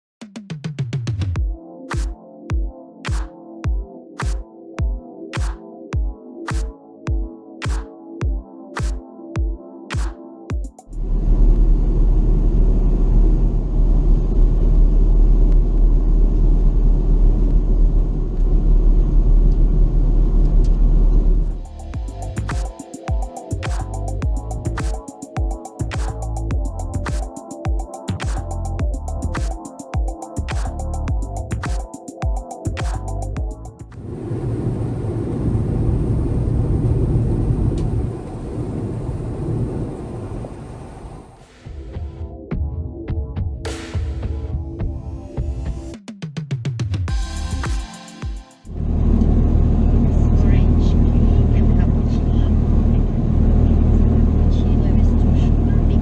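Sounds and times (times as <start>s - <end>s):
jet airliner engine rumble: 34.0s - 41.4s.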